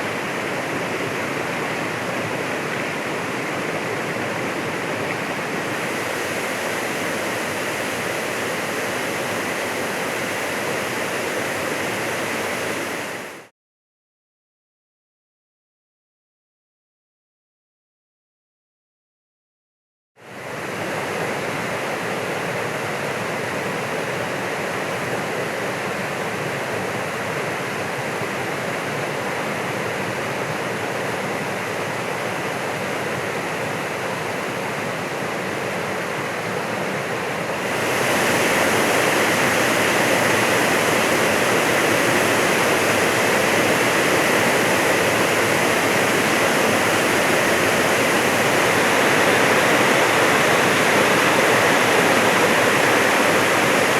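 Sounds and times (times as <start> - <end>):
waterfall rushing: 0.0 - 13.4, 27.7 - 53.9.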